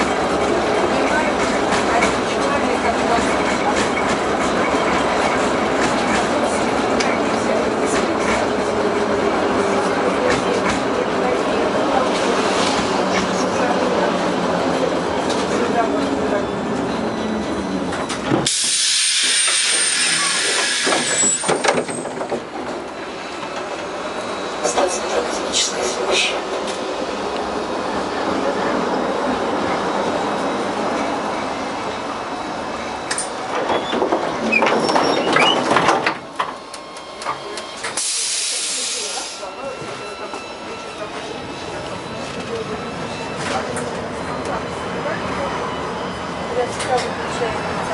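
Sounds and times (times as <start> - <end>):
tram running noise: 0.0 - 47.9
compressed air hissing: 18.5 - 21.1
knocks and clunks: 33.1 - 36.6.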